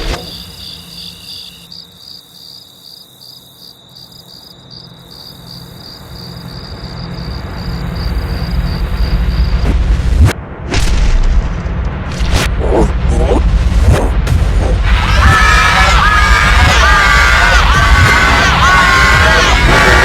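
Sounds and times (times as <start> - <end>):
crickets chirping: 0.0 - 9.8
low rumble: 6.8 - 20.0.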